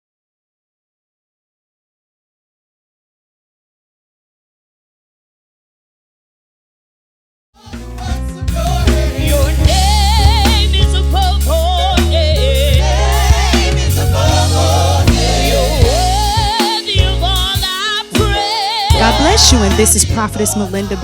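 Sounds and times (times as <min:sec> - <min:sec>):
drum kit: 0:07.6 - 0:21.0
person singing gospel: 0:07.6 - 0:21.0
heavy bass line: 0:07.8 - 0:21.0.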